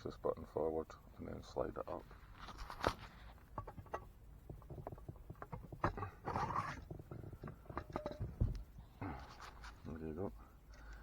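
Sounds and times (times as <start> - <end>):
rustling scrape: 2.0 - 3.8.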